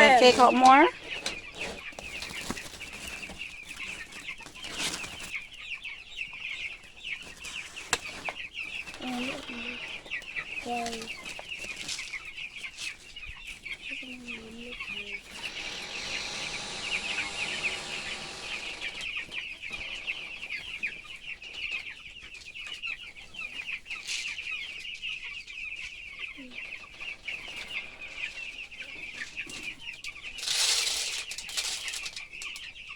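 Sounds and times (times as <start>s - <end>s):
chickens peeping: 0.0s - 32.9s
lower chicken calls: 13.5s - 21.9s.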